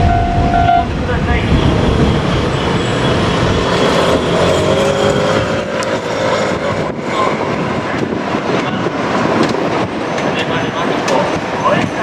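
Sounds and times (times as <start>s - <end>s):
diesel railcar engine: 0.0s - 12.0s.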